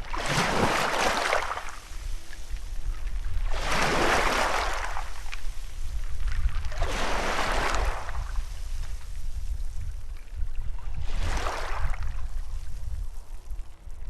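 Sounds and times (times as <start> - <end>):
sea waves washing in: 0.0 - 2.3, 3.4 - 8.9, 11.0 - 12.8
steady low rumble: 11.9 - 14.0.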